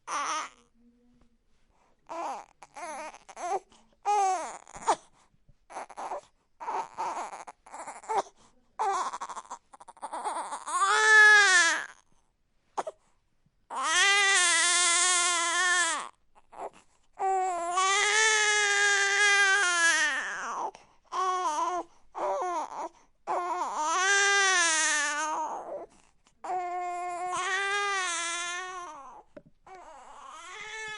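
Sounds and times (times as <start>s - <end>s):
newborn baby crying: 0.0s - 0.7s, 2.0s - 5.1s, 5.7s - 12.1s, 13.7s - 30.9s.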